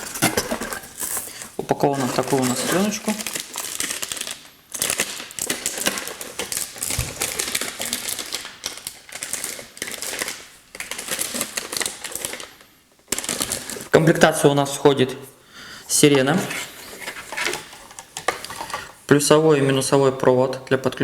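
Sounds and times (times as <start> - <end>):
plastic film crinkling: 0.0 - 14.0, 16.3 - 19.1.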